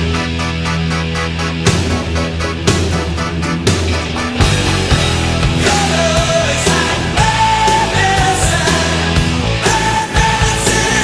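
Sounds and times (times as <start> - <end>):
rock music with low notes: 0.0 - 11.0
heavy drum hits: 1.6 - 9.5.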